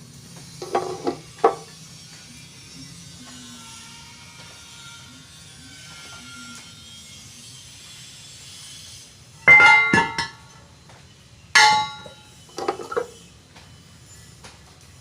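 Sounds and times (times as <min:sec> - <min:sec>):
hard objects clinking: 0:09.5 - 0:10.5, 0:11.6 - 0:13.2.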